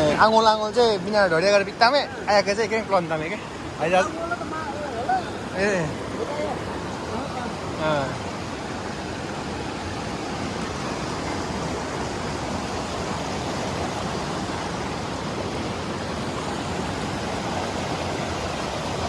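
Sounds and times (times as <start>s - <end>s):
river rushing over rocks: 0.0s - 19.0s.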